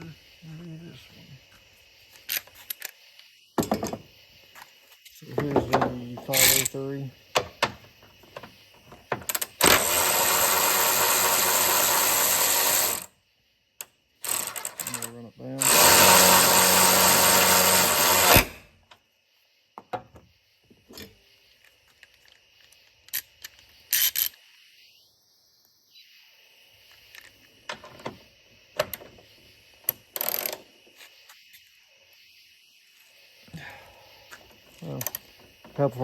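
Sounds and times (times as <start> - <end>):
cordless ratchet motor running: 9.6 - 13.1, 15.6 - 18.6.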